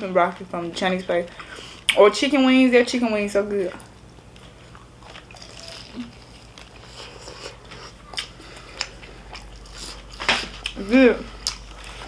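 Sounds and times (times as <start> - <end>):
low electrical hum: 0.0 - 12.0
person chewing food: 3.8 - 12.0.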